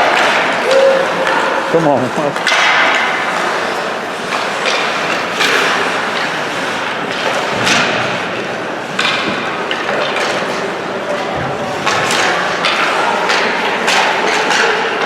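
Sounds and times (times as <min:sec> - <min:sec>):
skate blades scraping ice: 0:00.0 - 0:10.8
echoing hall noise: 0:00.0 - 0:15.0
sticks and puck clacking: 0:00.0 - 0:15.0.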